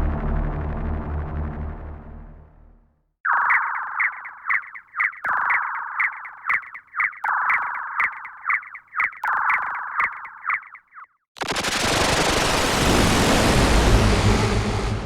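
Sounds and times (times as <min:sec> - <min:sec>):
buzzing warbling electronic tone: 0:03.3 - 0:11.0
rapid electronic clicks: 0:03.3 - 0:12.8.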